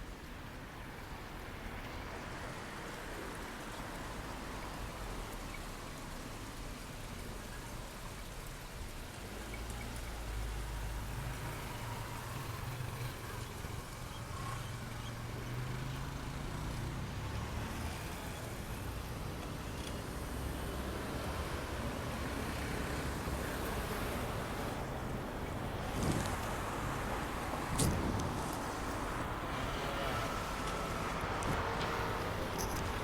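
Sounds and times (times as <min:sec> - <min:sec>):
cars passing: 0:10.2 - 0:33.0.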